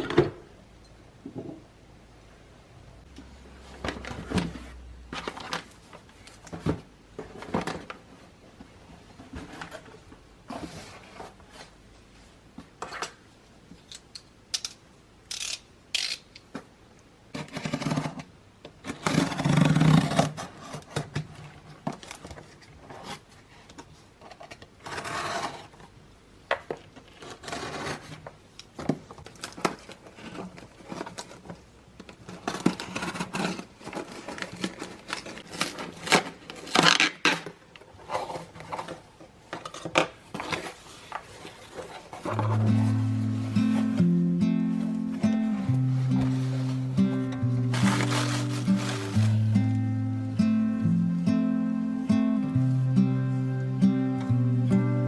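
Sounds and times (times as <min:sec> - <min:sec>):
scraping and rustling: 0:03.2 - 0:13.2, 0:29.3 - 0:49.8.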